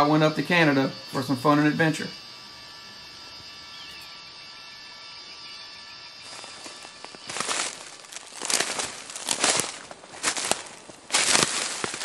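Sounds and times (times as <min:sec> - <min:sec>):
insect buzz: 0:00.0 - 0:12.0
footsteps crunching through dry leaves: 0:06.2 - 0:12.0.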